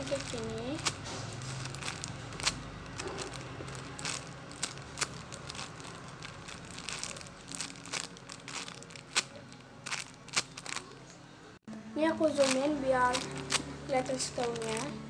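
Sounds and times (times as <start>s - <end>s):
squishy toy crinkling: 0.0s - 11.0s, 12.3s - 13.7s, 14.3s - 15.0s.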